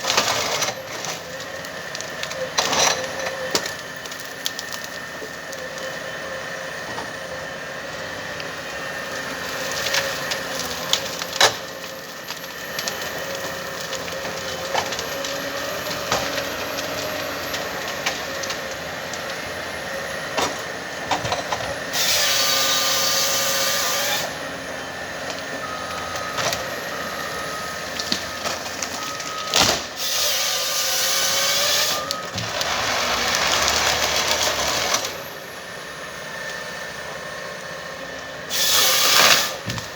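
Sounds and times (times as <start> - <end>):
wood cracking and snapping: 0.0 - 6.0, 9.1 - 19.4, 28.0 - 30.3, 31.0 - 35.2
forestry harvester hydraulic whine: 0.0 - 39.9.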